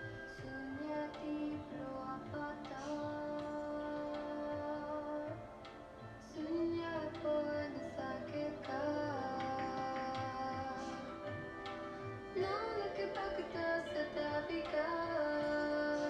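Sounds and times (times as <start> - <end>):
instrumental accompaniment: 0.0 - 16.0
person singing long gliding notes: 6.3 - 11.6.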